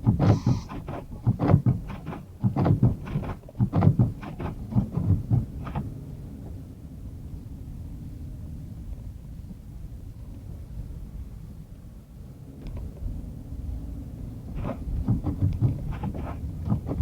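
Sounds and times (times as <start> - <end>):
knocks and thumps: 0.0 - 5.8, 14.6 - 17.0.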